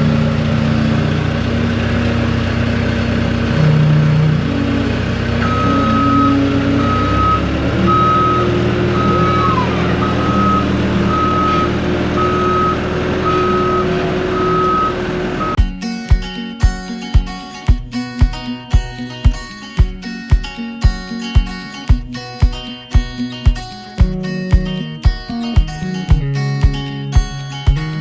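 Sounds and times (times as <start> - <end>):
skid steer engine running: 0.0 - 15.6
reversing alarm beeping: 5.4 - 15.6.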